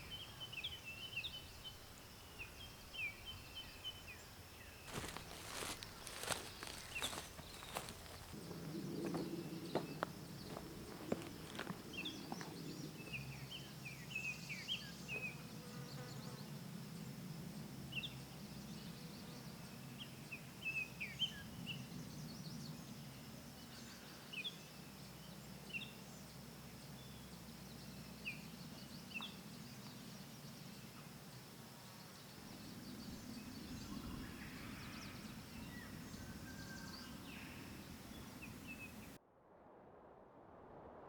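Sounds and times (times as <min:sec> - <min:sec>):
small birds chirping: 0:00.0 - 0:16.4, 0:26.9 - 0:39.2
faint insect drone: 0:00.0 - 0:39.2
steady low hum: 0:03.9 - 0:14.0.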